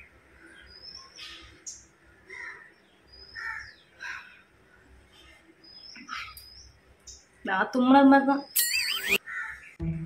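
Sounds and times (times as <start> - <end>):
crows cawing: 2.3 - 2.7, 3.3 - 4.4, 9.2 - 9.8
high bird chirps: 8.4 - 9.8.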